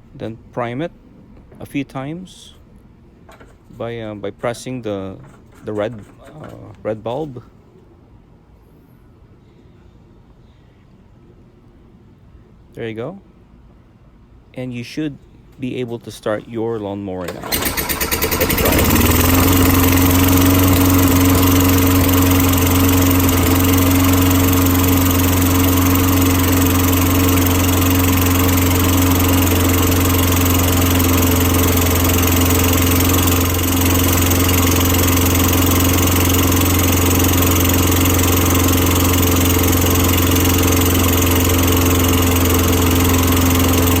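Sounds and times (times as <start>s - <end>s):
lawn mower engine running: 17.2s - 44.0s.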